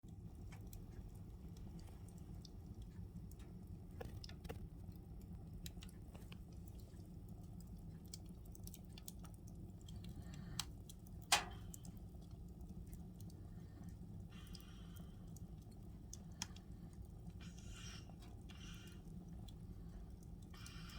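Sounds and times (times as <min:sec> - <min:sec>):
wood fire crackling: 0:00.0 - 0:20.9.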